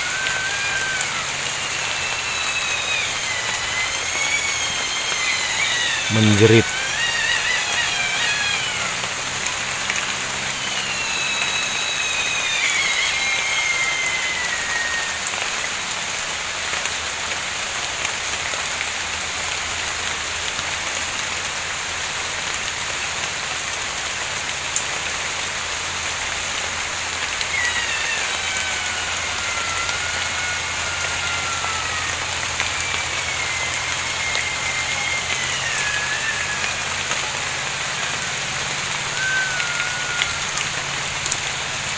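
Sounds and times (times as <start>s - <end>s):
animal screaming cry: 0.0s - 15.9s, 26.2s - 41.9s
steady rain: 0.0s - 41.9s.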